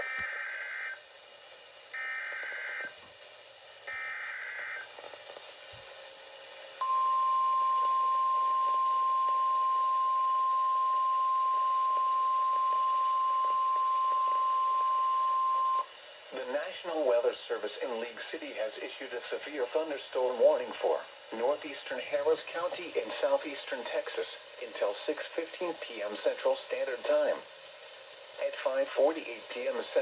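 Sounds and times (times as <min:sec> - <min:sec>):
steady warning alarm tone: 0:00.0 - 0:01.0, 0:01.9 - 0:03.0, 0:03.9 - 0:05.0, 0:06.8 - 0:15.8.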